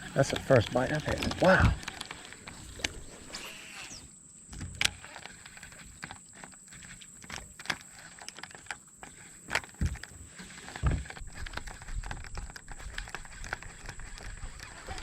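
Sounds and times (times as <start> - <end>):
light clicks and knocks: 0.2 - 3.1
dull thumps: 9.5 - 11.6.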